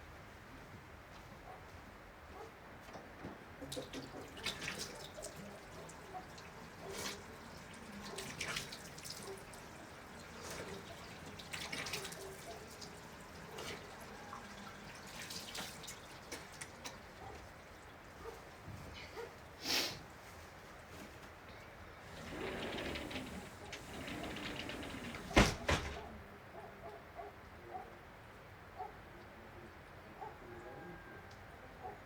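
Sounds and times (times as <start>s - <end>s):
water dripping and splattering: 3.6s - 19.5s, 22.0s - 26.1s.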